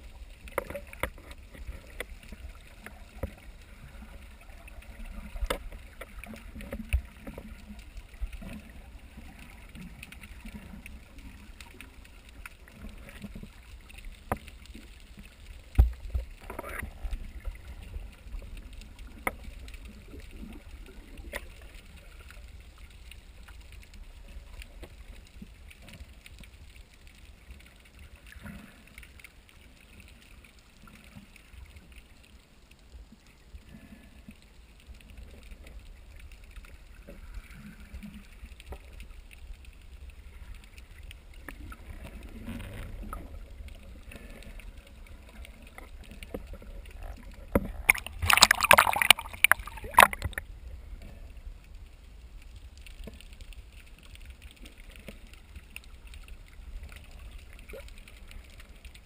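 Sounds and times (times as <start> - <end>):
faint water sounds: 0.0 - 59.0
light splashes: 47.5 - 50.4.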